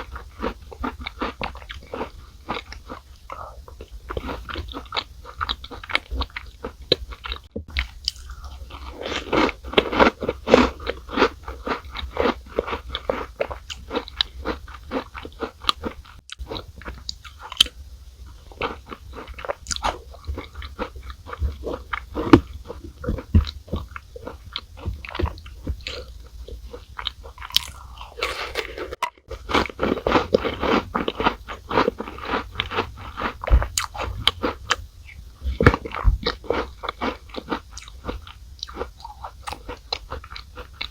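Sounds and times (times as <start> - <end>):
cookies crunching while chewed: 0.0 - 40.9
wet mouth sounds: 18.8 - 38.0.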